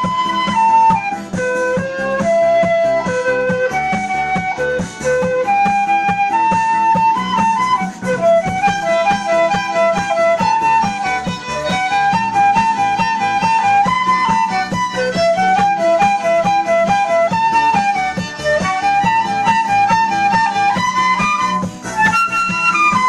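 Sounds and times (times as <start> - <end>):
violin-like melody over beat: 0.0 - 23.0.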